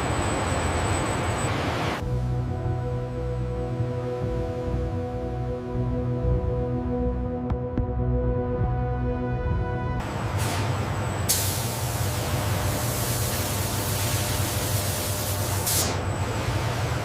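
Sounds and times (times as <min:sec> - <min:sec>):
low machine hum: 0:00.0 - 0:17.0.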